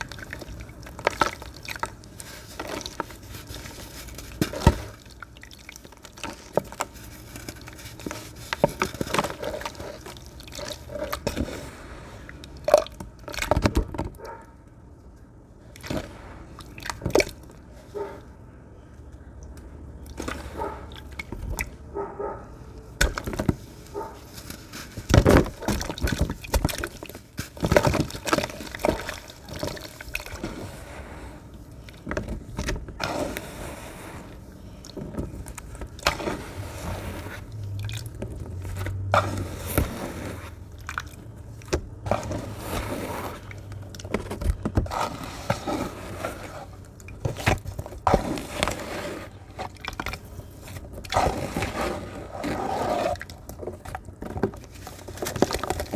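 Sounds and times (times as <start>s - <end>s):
water splashing and dripping: 37.5s - 39.3s, 40.5s - 42.0s.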